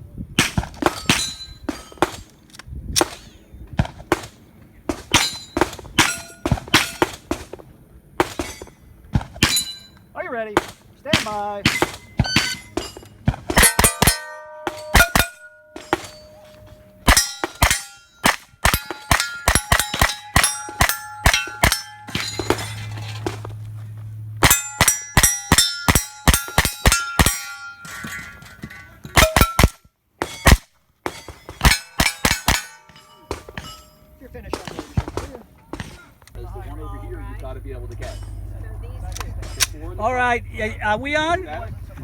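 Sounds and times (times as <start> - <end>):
steel plate ringing clang: 0.8 - 2.2, 5.1 - 7.1, 8.3 - 8.8, 9.4 - 23.4, 24.4 - 36.2, 37.9 - 38.6.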